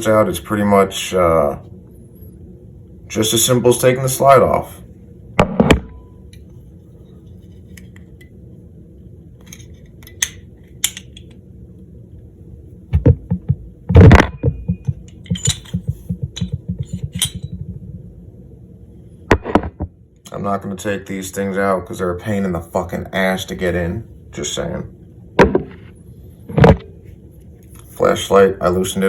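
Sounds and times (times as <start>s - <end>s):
pistol parts clicking and clattering: 9.4s - 11.4s, 14.9s - 17.6s
loud knocks: 25.4s - 25.8s.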